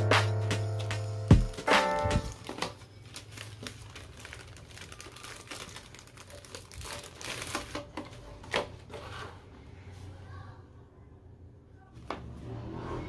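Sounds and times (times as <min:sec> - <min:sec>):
packaging crinkling: 0:02.3 - 0:08.7.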